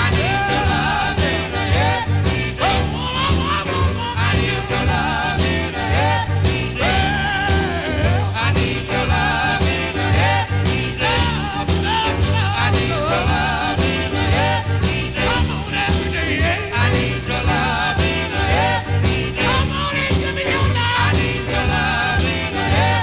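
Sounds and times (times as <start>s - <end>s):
pop record playing: 0.0s - 23.0s.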